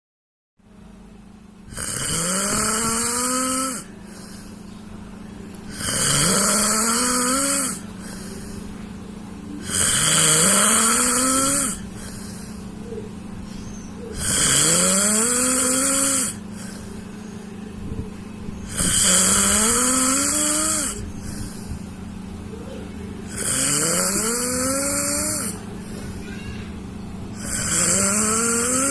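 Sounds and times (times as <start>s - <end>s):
person snoring: 1.7s - 4.6s, 5.7s - 8.6s, 9.6s - 13.0s, 14.1s - 17.1s, 18.7s - 21.7s, 23.2s - 26.3s, 27.4s - 28.9s.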